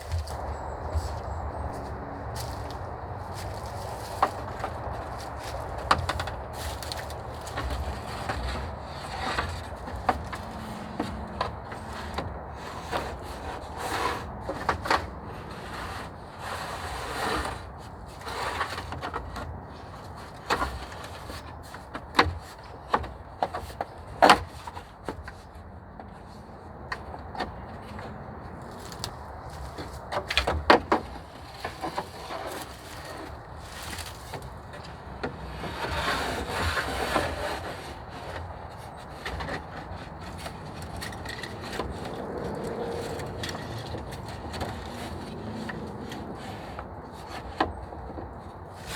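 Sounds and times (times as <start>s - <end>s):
wooden sticks knocking and cracking: 0.0s - 15.2s, 25.9s - 48.9s
branches rustling: 0.0s - 48.9s.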